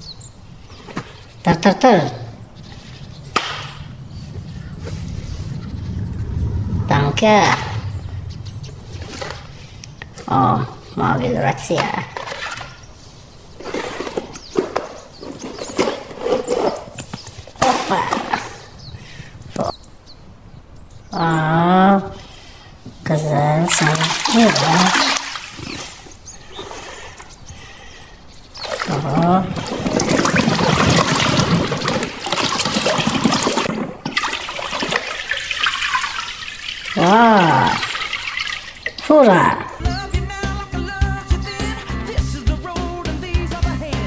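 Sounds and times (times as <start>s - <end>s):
running water splashing: 0.0s - 14.1s, 22.3s - 40.0s
toy vehicles knocking and clacking: 13.6s - 18.4s, 28.6s - 39.2s.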